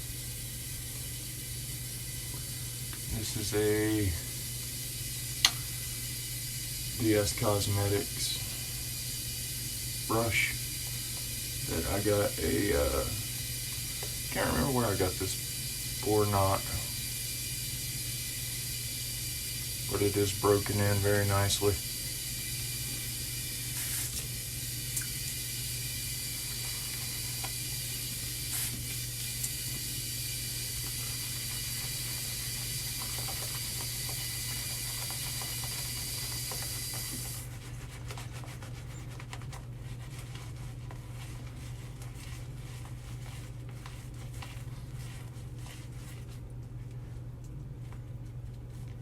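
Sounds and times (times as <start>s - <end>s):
tap water running into sink: 19.5s - 37.5s.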